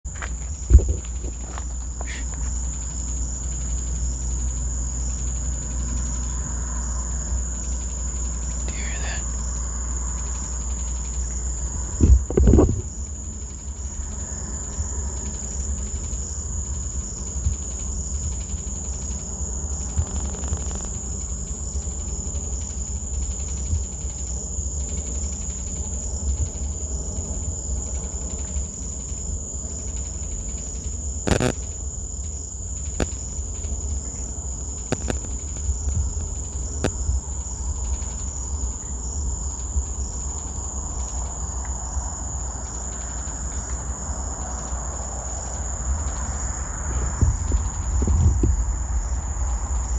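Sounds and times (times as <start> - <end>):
high-pitched insect drone: 0.1 - 49.9
low rumble: 0.3 - 2.0, 45.6 - 49.9
sharp clicks: 31.3 - 31.6, 34.9 - 37.0.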